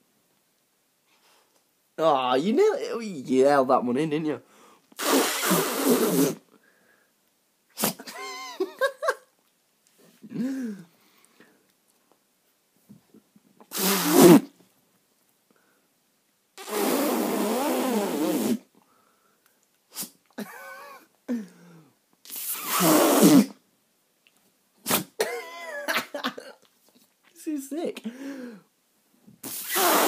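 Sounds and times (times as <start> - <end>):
loud sneezes: 5.0 - 6.4, 7.7 - 8.2, 13.7 - 14.5, 19.9 - 20.2, 22.3 - 23.6, 24.8 - 25.5, 29.4 - 30.0.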